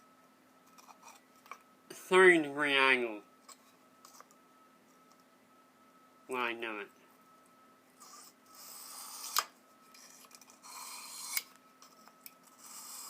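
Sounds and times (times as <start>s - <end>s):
blade scraping sharpening stone: 10.0s - 11.5s, 12.6s - 13.0s.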